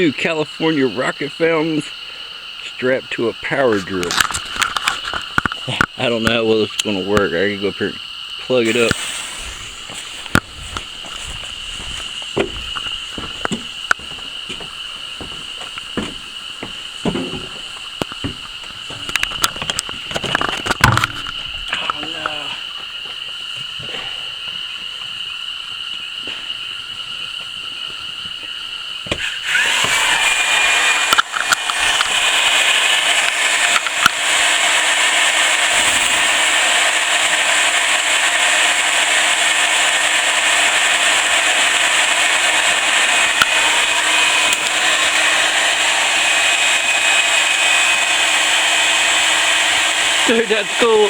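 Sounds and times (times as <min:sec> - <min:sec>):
drill motor whine: 0:00.0 - 0:23.1, 0:29.0 - 0:51.0
fireworks gushing hiss: 0:08.4 - 0:24.8, 0:27.7 - 0:51.0
sharp cracks: 0:08.5 - 0:22.5, 0:29.1 - 0:51.0.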